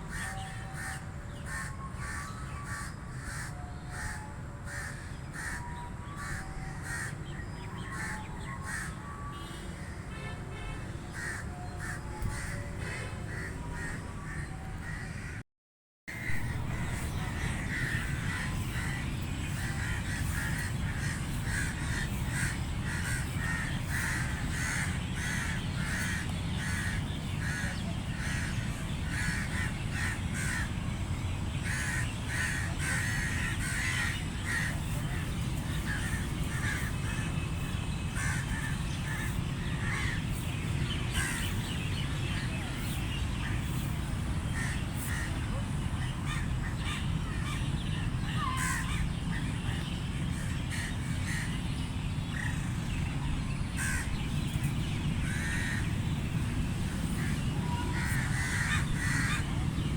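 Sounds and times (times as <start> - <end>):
crows cawing: 0.1 - 7.2, 11.2 - 15.4, 16.2 - 30.8, 31.6 - 37.3, 38.1 - 41.9, 46.0 - 47.6, 48.4 - 49.1, 53.7 - 54.2, 55.2 - 59.8
low background rumble: 16.1 - 59.9.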